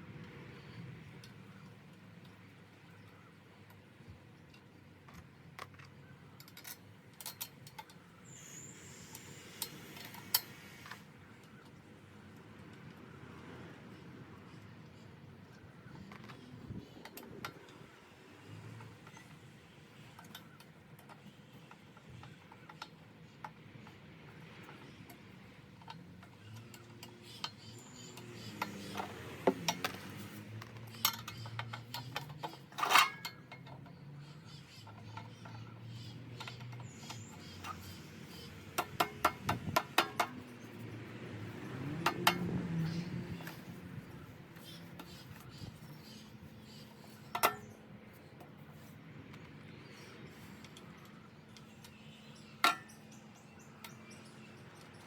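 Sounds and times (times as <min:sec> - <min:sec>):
metal parts clinking and knocking: 0:25.8 - 0:34.0, 0:36.3 - 0:48.6.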